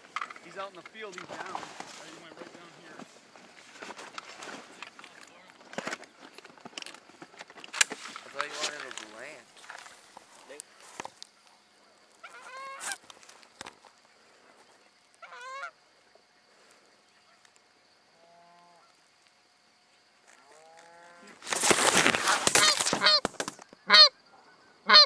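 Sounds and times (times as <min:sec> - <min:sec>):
geese honking: 0:12.2 - 0:13.0, 0:15.2 - 0:15.8, 0:22.5 - 0:23.3, 0:23.9 - 0:24.2.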